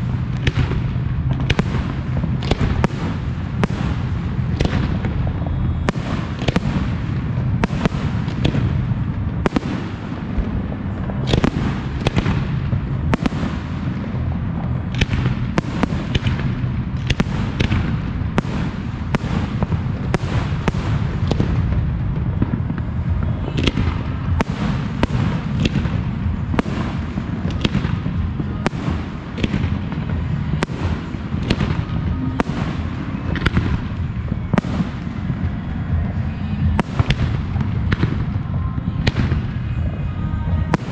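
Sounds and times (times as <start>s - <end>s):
low rumble: 0.0s - 40.9s.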